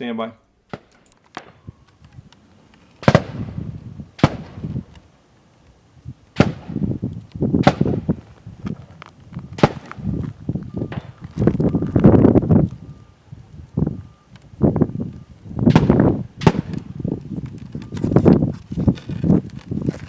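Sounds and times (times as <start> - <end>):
pistol shots: 3.0 - 3.6, 4.2 - 4.9, 6.4 - 6.9, 7.6 - 8.2, 9.6 - 10.1, 15.7 - 16.9.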